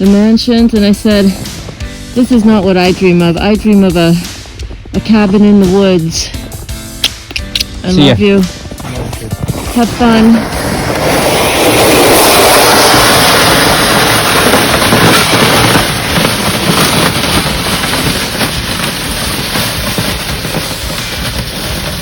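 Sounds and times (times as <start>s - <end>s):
vehicle driving off: 8.9s - 18.7s.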